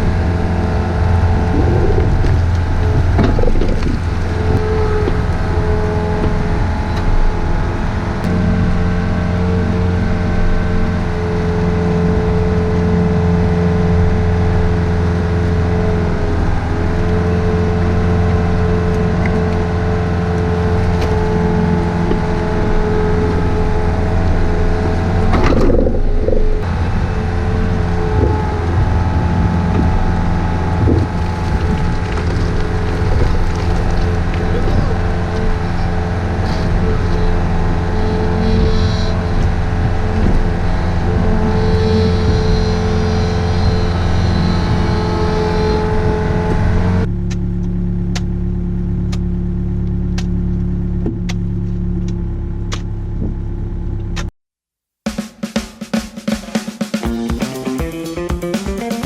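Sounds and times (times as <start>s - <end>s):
excavator diesel engine running: 0.0s - 54.2s.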